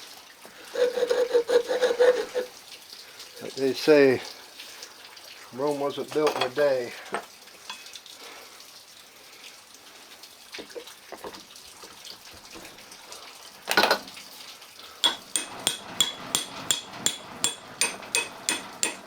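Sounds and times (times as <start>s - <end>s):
loud metallic clank: 15.0s - 19.0s
ringing metal taps: 15.0s - 19.0s.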